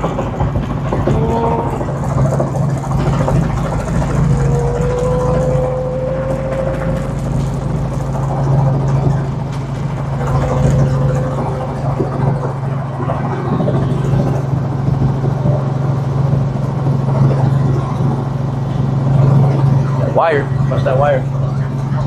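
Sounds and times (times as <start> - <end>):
helicopter engine and rotor drone: 0.0 - 22.0.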